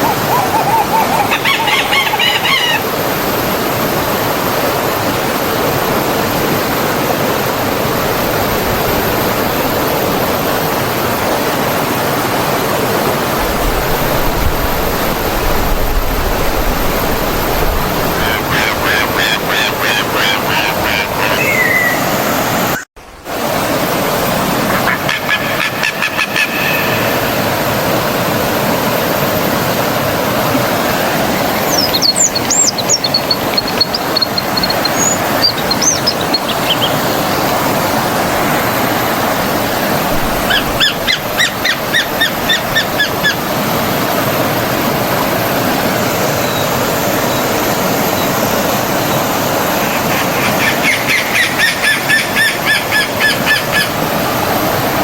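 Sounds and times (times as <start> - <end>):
birds calling: 0.0 - 3.5, 16.4 - 22.9, 24.7 - 27.6, 30.4 - 44.1, 46.4 - 54.6
stream water running: 0.0 - 55.0
high whistled bird chirps: 21.3 - 22.2, 31.5 - 37.0.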